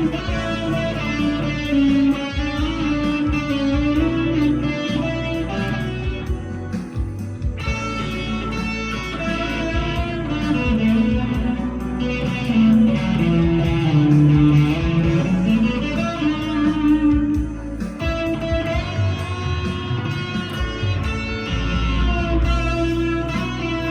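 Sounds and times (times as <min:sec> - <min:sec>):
backing track: 0:00.0 - 0:23.9
overdriven electric guitar lead: 0:00.0 - 0:23.9.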